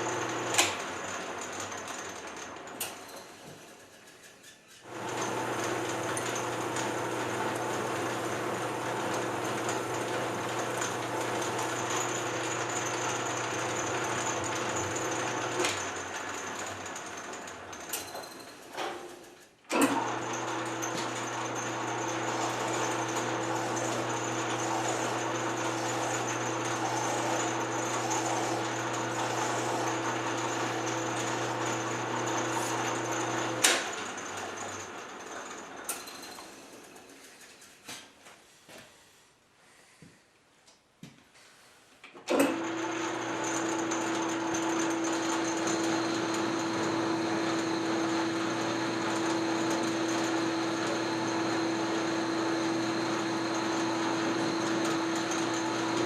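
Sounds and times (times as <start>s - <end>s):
machine tool motor humming: 4.9s - 17.5s, 19.8s - 35.8s, 42.5s - 56.0s.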